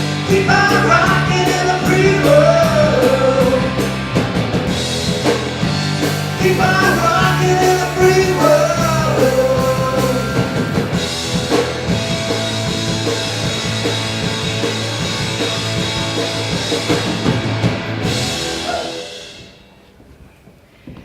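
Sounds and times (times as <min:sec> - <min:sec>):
rock music with drums and guitar: 0:00.0 - 0:19.8.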